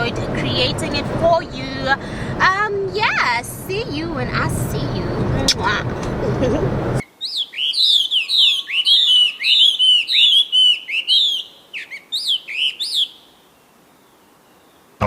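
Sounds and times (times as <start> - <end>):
bird chirping: 7.0 - 14.9.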